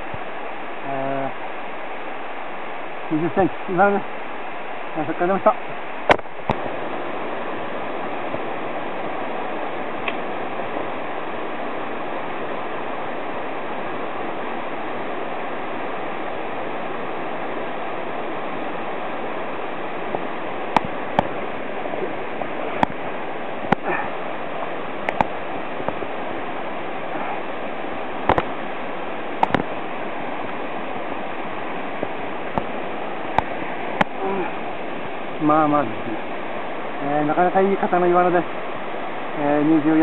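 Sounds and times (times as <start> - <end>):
stream rushing over rocks: 0.0 - 40.0
sharp clicks and knocks: 28.3 - 28.5, 29.4 - 29.7.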